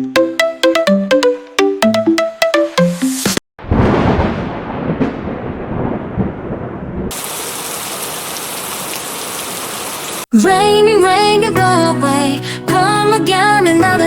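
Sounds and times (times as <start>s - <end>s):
thunder rumbling: 3.6s - 8.3s
heavy rain hiss: 7.1s - 10.3s.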